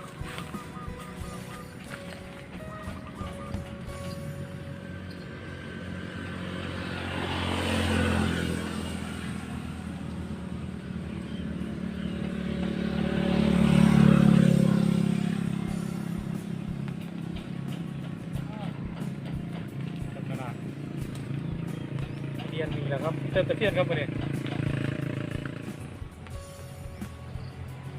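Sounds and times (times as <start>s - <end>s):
motor vehicles passing by: 0.0s - 27.9s.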